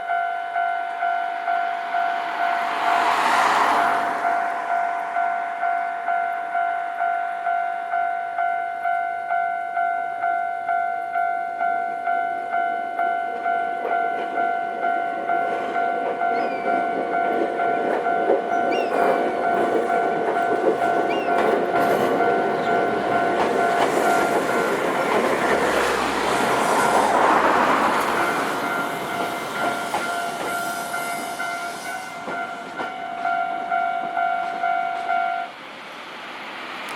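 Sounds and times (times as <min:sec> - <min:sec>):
train wheels clattering on rails: 0:13.3 - 0:35.3.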